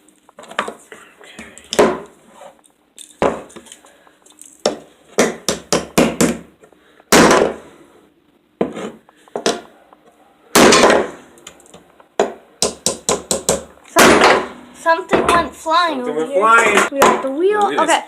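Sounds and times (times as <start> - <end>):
toy car smashing crashes: 10.6 - 11.3, 14.0 - 15.4.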